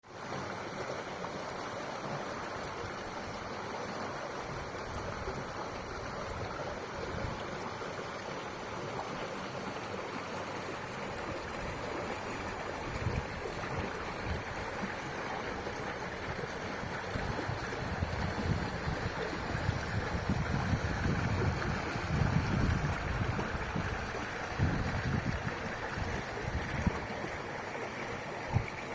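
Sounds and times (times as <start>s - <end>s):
wind buffeting microphone: 16.8s - 27.1s.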